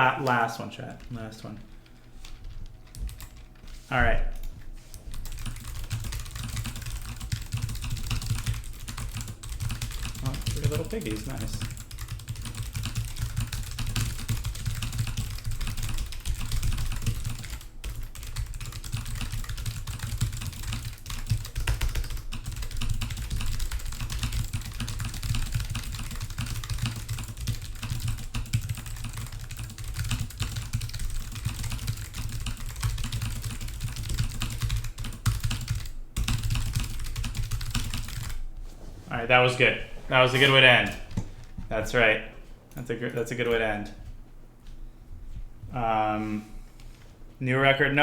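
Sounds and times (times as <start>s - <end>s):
keyboard typing: 1.0s - 38.4s.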